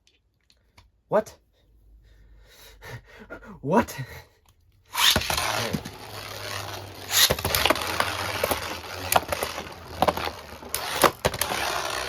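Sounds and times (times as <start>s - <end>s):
spinning tops whirring: 4.9s - 12.0s
spinning tops clashing: 5.0s - 12.0s.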